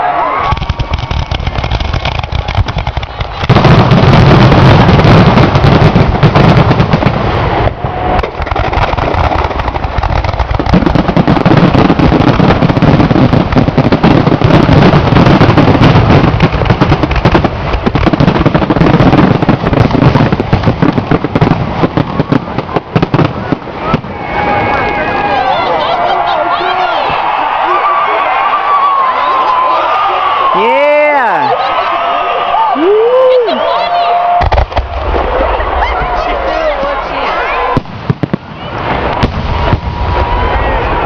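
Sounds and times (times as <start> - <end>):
fireworks crackling bangs and pops: 0.3 - 25.0, 34.2 - 41.0.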